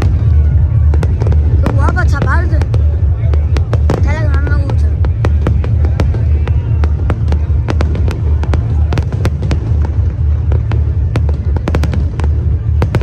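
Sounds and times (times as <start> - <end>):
fireworks bangs and crackles: 0.0 - 13.0
low rumble: 0.0 - 13.0.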